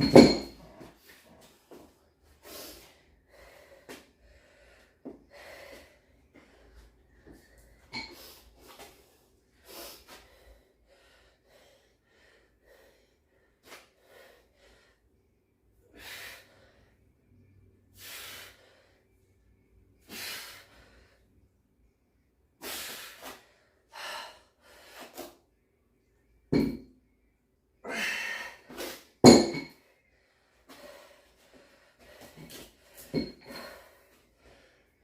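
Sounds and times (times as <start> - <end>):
man breathing hard: 2.3 - 7.8, 22.6 - 25.2.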